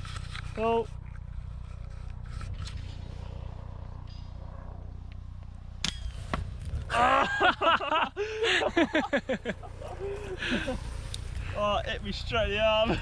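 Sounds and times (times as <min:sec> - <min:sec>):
air rifle shot: 0:05.8 - 0:06.9
people laughing: 0:06.9 - 0:13.0.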